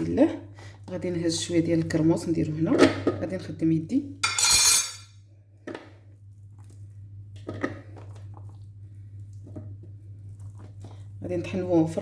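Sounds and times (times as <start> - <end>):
steady low hum: 3.3 - 12.0.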